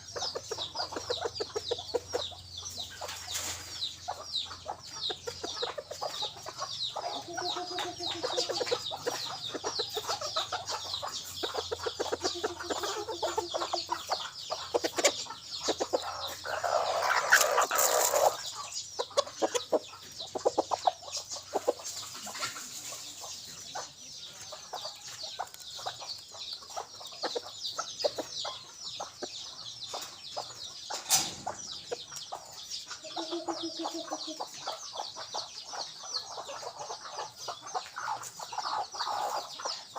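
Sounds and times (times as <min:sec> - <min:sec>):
rooster clucking and calling: 0:00.0 - 0:03.3, 0:04.0 - 0:23.2, 0:31.5 - 0:35.2.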